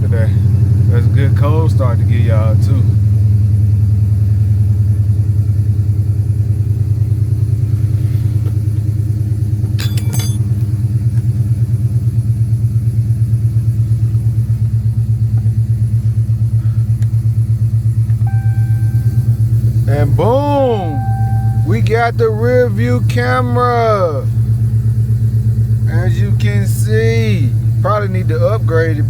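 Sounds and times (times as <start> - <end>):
car engine idling: 0.0 - 29.0
high-pitched tones: 18.2 - 22.2.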